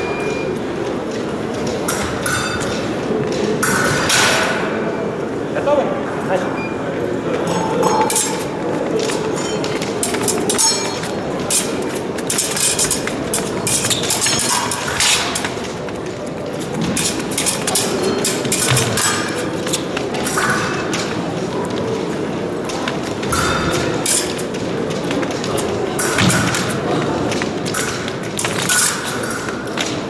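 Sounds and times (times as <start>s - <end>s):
sports hall din: 0.0s - 30.0s
fencing blades clicking and scraping: 7.5s - 30.0s.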